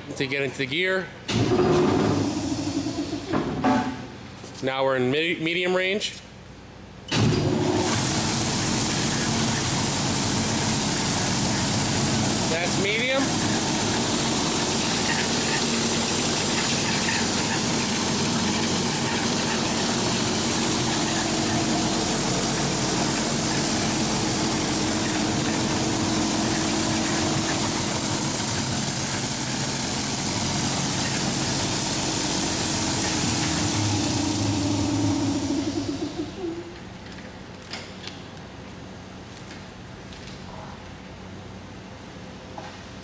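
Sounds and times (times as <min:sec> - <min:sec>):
band saw running: 0:07.6 - 0:36.5.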